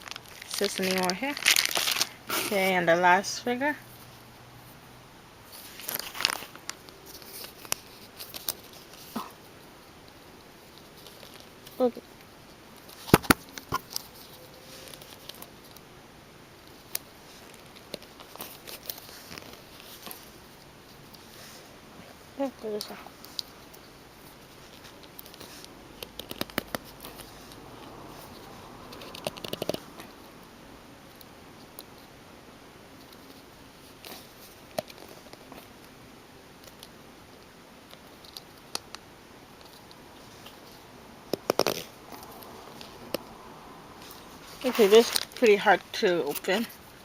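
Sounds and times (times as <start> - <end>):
plastic packaging clicks: 0.0 - 2.1
packaging rustling: 0.0 - 2.6, 5.5 - 9.2
plastic crinkle: 0.0 - 2.7, 5.5 - 9.5
plastic and cardboard packaging clicks: 12.8 - 15.5, 25.0 - 27.3, 41.3 - 42.4.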